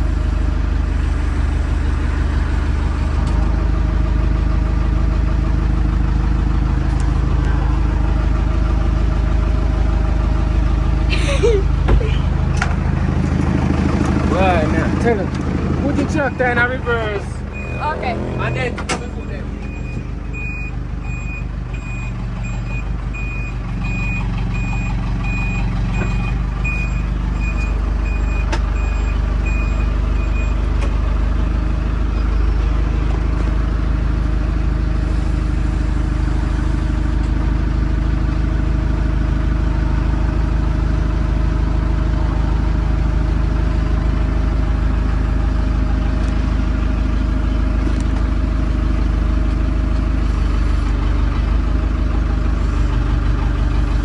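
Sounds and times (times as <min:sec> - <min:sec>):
reversing alarm beeping: 0:00.0 - 0:03.3, 0:16.7 - 0:30.7
diesel engine running: 0:00.0 - 0:54.0.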